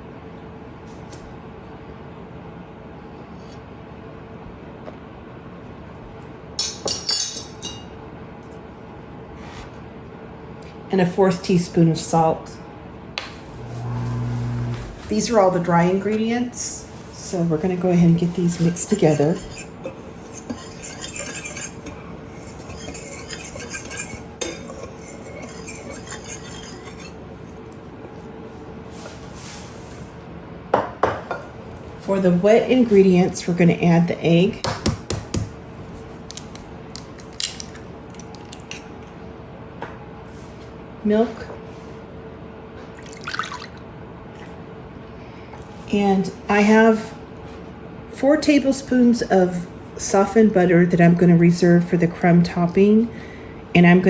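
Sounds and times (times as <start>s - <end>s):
whisk scraping a bowl: 18.2s - 27.2s.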